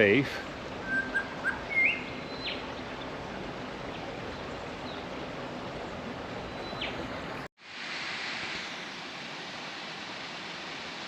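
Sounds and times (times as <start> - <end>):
bird whistle: 0.8 - 2.1.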